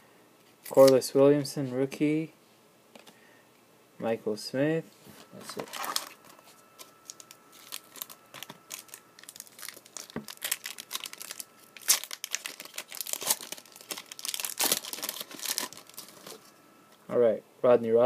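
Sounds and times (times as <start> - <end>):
card pack wrapper crinkling: 5.4 - 16.5.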